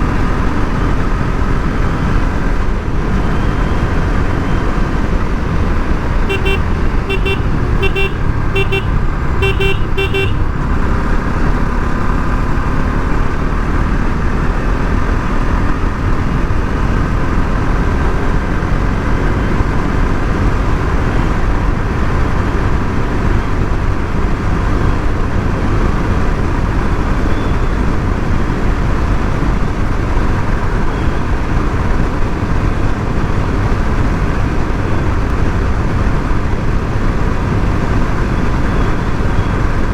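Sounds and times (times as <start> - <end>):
motorcycle engine riding: 0.0 - 39.9
vehicle horn beeping: 6.2 - 10.7.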